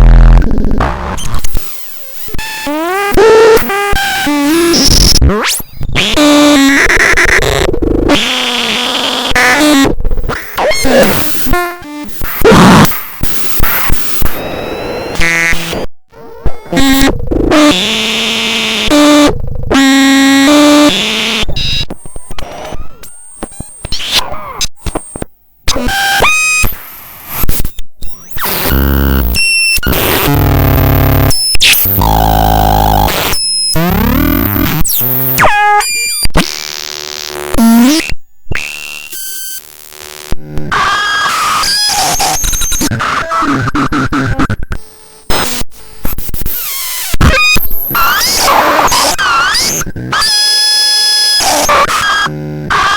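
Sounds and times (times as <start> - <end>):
buzzy synthesizer tones: 0.0 - 1.2, 2.4 - 26.6.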